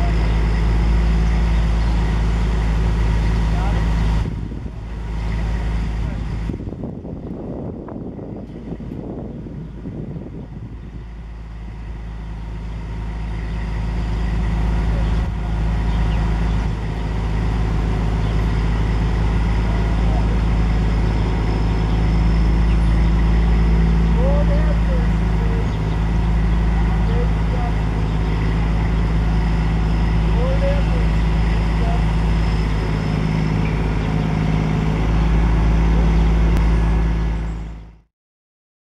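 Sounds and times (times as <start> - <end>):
large engine running: 0.0 - 38.1.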